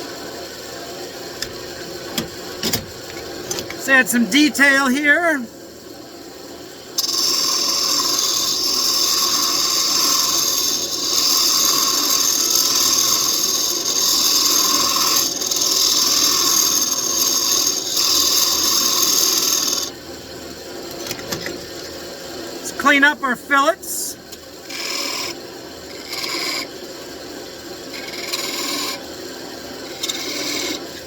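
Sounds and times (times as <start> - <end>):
lathe tool scraping wood: 7.0 - 19.9, 27.9 - 29.0, 29.8 - 30.8.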